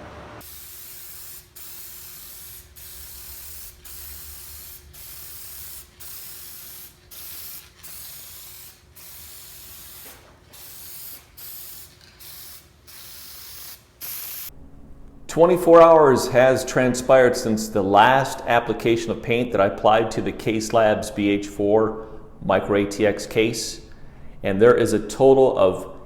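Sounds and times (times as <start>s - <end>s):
spray paint can hissing: 0.4s - 14.5s.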